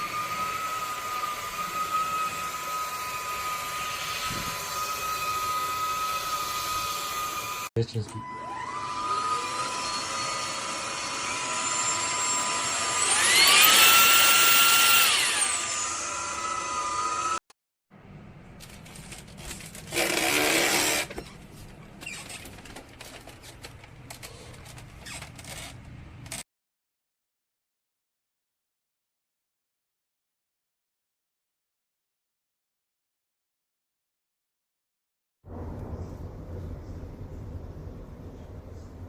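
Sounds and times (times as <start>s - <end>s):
vacuum cleaner motor whine: 0.0s - 17.4s.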